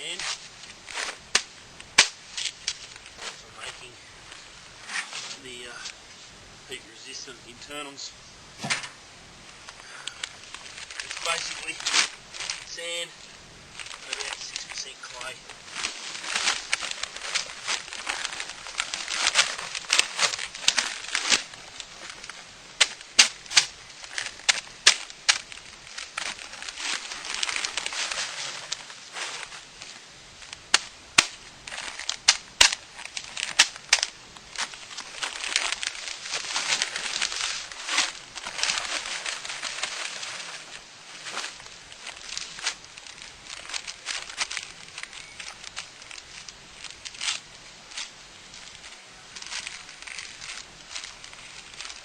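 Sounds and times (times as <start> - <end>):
gritty sand scraping and rustling: 0.0 - 8.0, 8.6 - 52.0.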